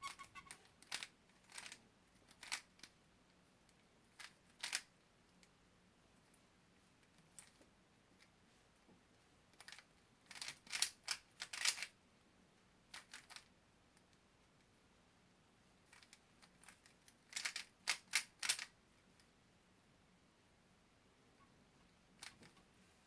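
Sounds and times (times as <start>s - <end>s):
puzzle cube plastic clicks: 0.0s - 3.0s, 4.2s - 4.9s, 9.6s - 11.9s, 13.0s - 13.5s, 15.9s - 18.7s.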